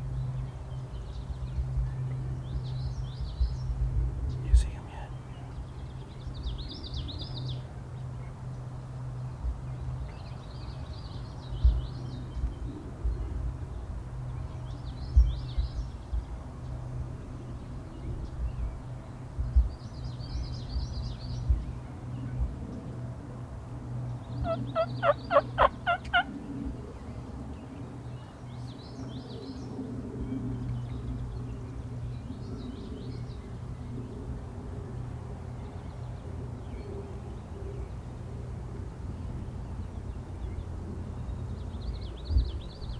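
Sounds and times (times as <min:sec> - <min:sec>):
small birds chirping: 0:04.3 - 0:07.6, 0:24.3 - 0:26.4
wild turkey gobbling: 0:24.4 - 0:26.3.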